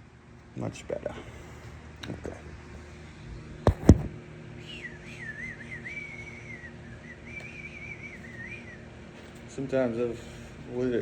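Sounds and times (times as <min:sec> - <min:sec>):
person whistling a tune: 0:04.6 - 0:08.8.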